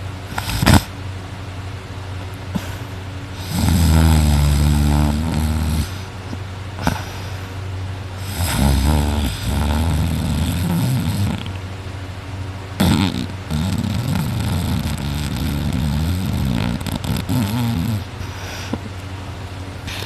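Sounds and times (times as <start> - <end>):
person snoring loudly: 0.3 - 0.9, 3.4 - 6.1, 8.2 - 11.6, 12.8 - 18.8.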